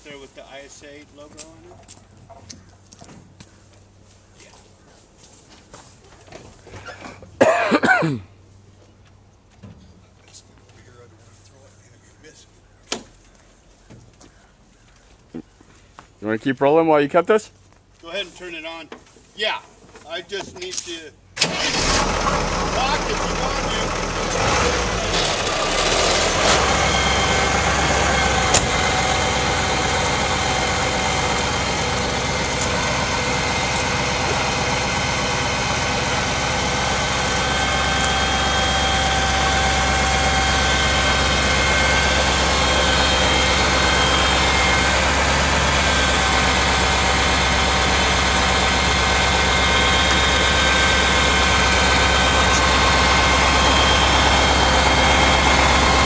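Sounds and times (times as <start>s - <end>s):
truck engine idling: 21.4s - 56.0s.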